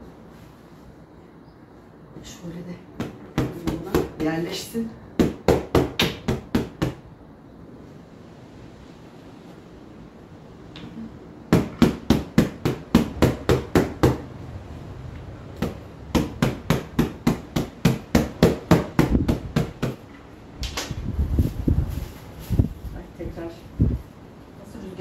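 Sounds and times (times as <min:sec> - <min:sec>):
pillow being beaten: 0:05.2 - 0:07.0, 0:11.5 - 0:14.2, 0:15.6 - 0:20.0.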